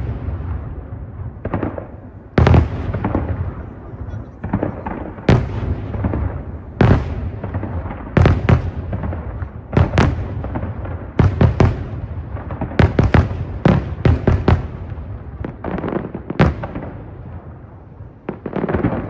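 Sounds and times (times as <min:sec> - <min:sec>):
fireworks booming: 0:00.0 - 0:16.9
rumble of echoing reports: 0:01.9 - 0:08.0.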